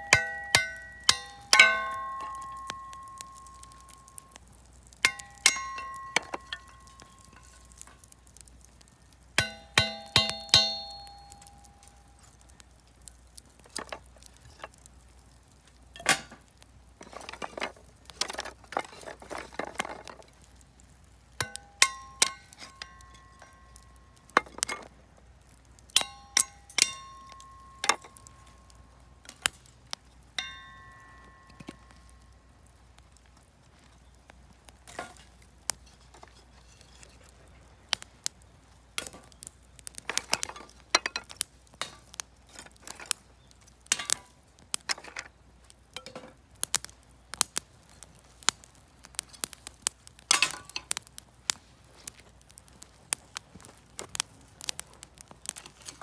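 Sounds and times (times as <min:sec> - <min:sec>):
metallic clinks: 0:00.0 - 0:04.4, 0:05.0 - 0:08.1, 0:09.4 - 0:12.2.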